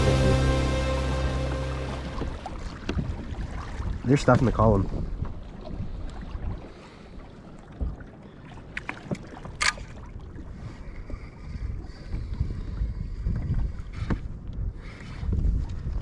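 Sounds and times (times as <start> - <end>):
wind buffeting microphone: 10.1 - 16.0.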